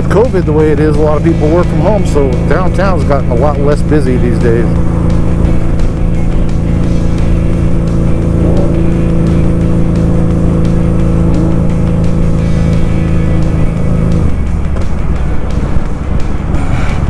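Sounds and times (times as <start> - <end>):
motorcycle engine running: 0.0 - 17.0
wind noise on microphone: 13.9 - 17.0.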